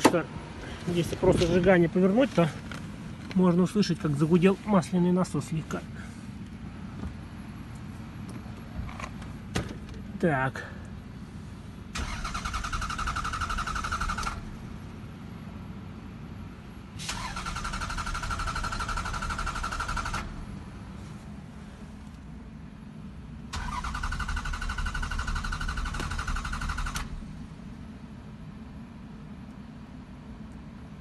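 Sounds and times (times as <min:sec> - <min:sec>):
steady low hum: 0:00.0 - 0:31.0
car engine cranking on starter: 0:11.9 - 0:14.7, 0:17.0 - 0:20.6, 0:23.5 - 0:27.5.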